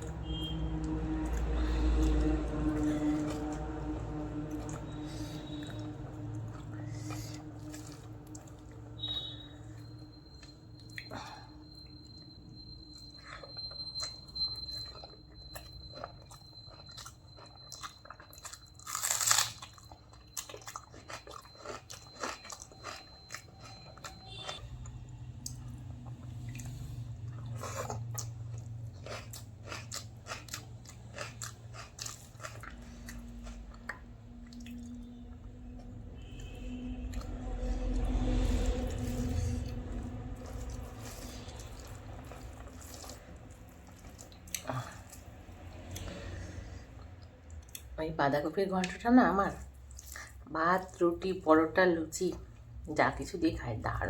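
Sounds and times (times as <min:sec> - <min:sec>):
person chewing food: 0:00.0 - 0:36.5, 0:37.1 - 0:47.9, 0:49.7 - 0:51.0
food crunching: 0:12.6 - 0:35.5, 0:38.0 - 0:46.4.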